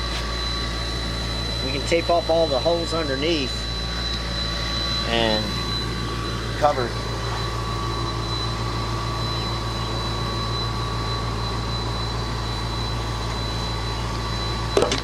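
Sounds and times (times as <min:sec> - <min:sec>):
faint whine tones: 0:00.0 - 0:15.0
machine droning with low hum: 0:00.0 - 0:15.0.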